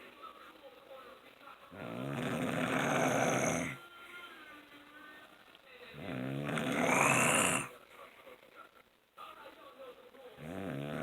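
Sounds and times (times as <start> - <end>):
man snoring: 1.8 - 3.8, 6.0 - 7.7, 10.4 - 11.0.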